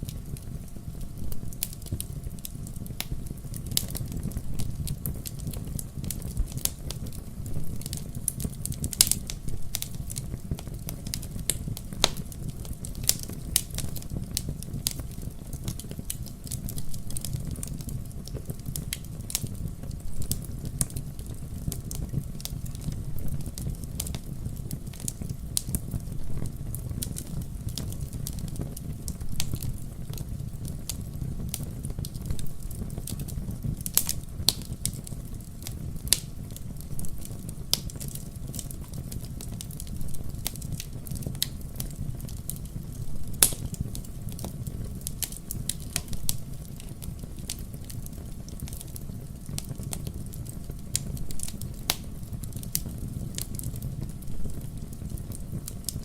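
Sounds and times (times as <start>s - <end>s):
low rumble of flames: 0.0s - 56.0s
wood fire crackling and popping: 0.0s - 56.0s.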